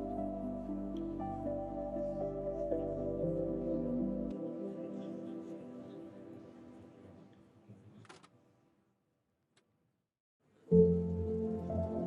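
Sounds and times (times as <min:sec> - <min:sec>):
background music with held notes: 0:00.0 - 0:07.2, 0:10.7 - 0:12.0.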